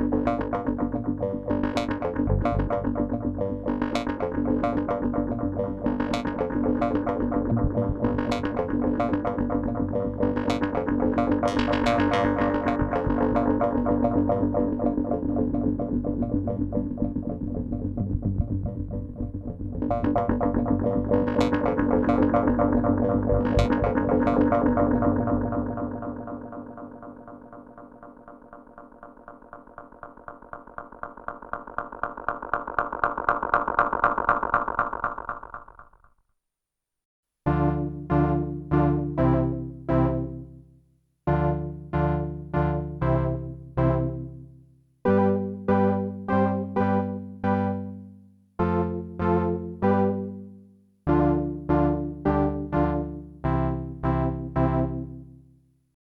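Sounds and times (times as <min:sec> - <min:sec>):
held low synthesizer tone: 0:00.0 - 0:28.2, 0:51.1 - 0:55.5
synthesizer plucked notes with echoes: 0:00.0 - 0:35.7, 0:37.5 - 0:55.6.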